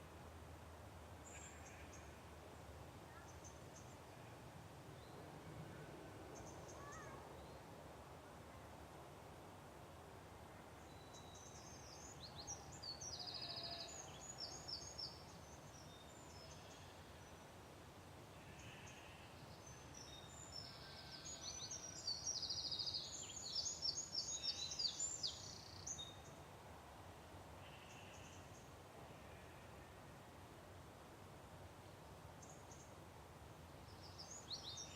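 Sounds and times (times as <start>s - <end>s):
faint background hiss: 0.0s - 34.9s
songbird chirps and trills: 18.5s - 26.4s.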